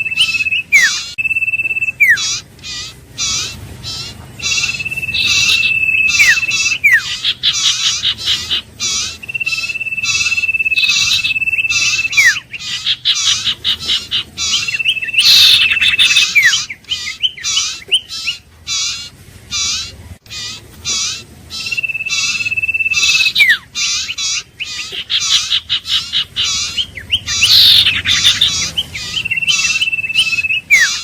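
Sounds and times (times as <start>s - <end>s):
bird long level whistle: 0.0s - 2.4s, 4.4s - 7.6s, 9.2s - 12.5s, 14.5s - 18.1s, 21.5s - 25.4s, 26.6s - 31.0s
repeated bird chirping: 0.0s - 31.0s.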